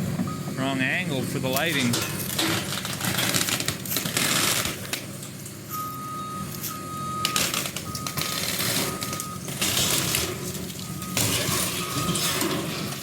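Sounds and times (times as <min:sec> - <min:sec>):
excavator engine under load: 0:00.0 - 0:13.0
backup alarm beeping: 0:00.2 - 0:01.1, 0:05.7 - 0:10.2, 0:10.8 - 0:12.4
building crunching and cracking: 0:01.8 - 0:05.6, 0:07.2 - 0:13.0.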